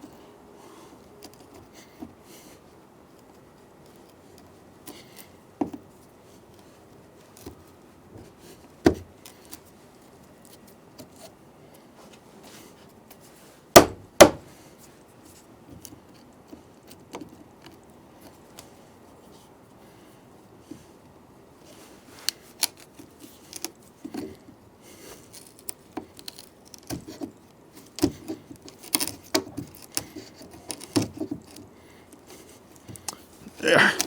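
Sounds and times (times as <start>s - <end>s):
chisel knocks on wood: 13.8s - 14.4s
loud strikes on chisel: 13.8s - 14.4s
chisel scraping and tapping wood: 28.0s - 31.6s.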